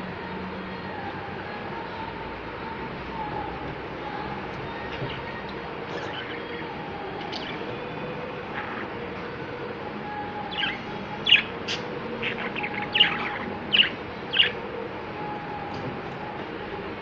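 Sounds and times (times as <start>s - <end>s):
steady background hum: 0.0s - 17.0s
budgerigars chirping: 10.5s - 14.6s.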